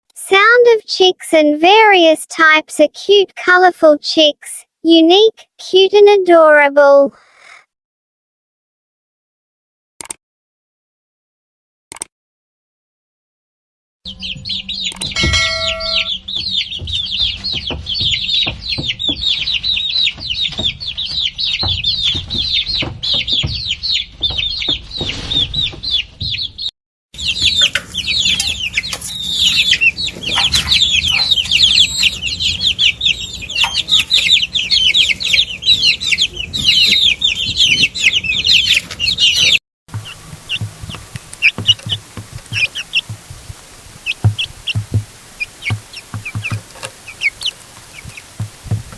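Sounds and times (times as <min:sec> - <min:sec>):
chicks peeping: 0:14.1 - 0:48.9.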